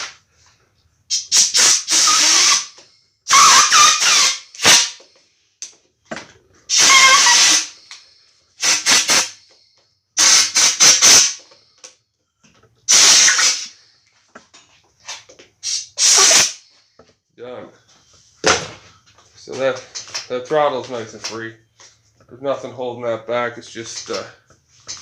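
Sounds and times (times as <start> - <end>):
air blow gun hissing: 1.1 - 5.0, 6.7 - 7.9, 8.6 - 9.4, 10.2 - 11.5, 12.9 - 13.8, 15.6 - 16.6.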